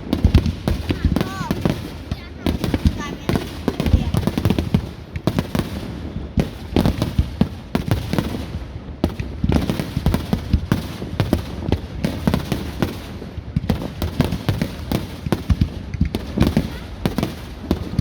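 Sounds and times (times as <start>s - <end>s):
fireworks bangs and booms: 0.0s - 18.0s.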